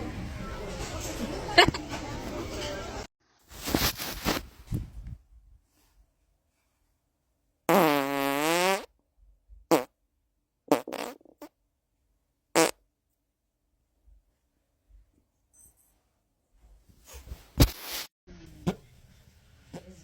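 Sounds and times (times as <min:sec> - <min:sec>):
farts: 0:07.7 - 0:08.9, 0:09.7 - 0:09.9, 0:10.7 - 0:11.5, 0:12.6 - 0:12.8.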